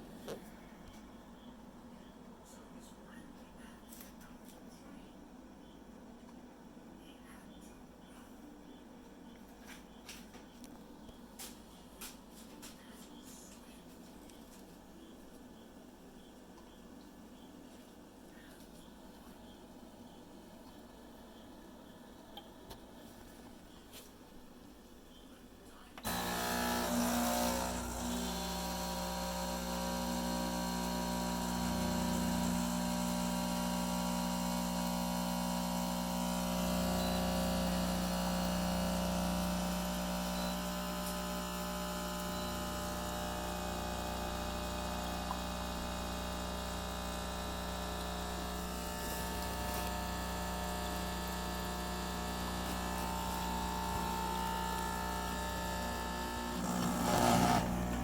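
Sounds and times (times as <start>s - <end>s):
coffee machine humming: 26.0s - 58.0s.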